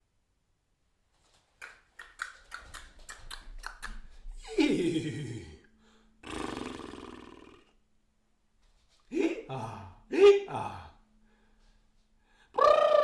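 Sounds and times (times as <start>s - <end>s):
tongue clicks like hooves: 1.6s - 4.2s
person imitating horse whinny: 6.2s - 7.8s.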